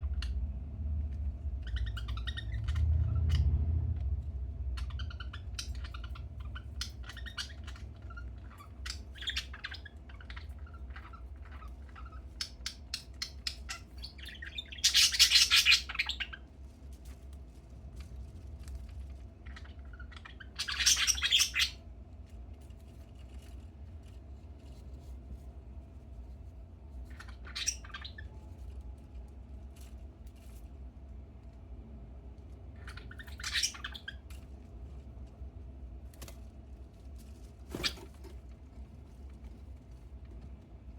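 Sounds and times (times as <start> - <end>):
budgerigar chirping and chattering: 1.6 - 3.4, 4.7 - 16.5, 19.4 - 21.8, 27.1 - 28.4, 32.8 - 34.4.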